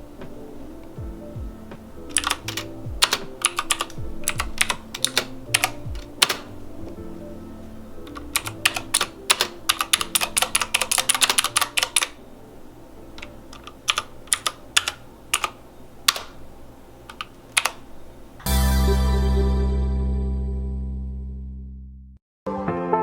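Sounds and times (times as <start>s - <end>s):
mechanical keyboard typing: 2.1s - 6.5s, 8.0s - 12.2s, 13.2s - 16.4s, 17.1s - 17.8s.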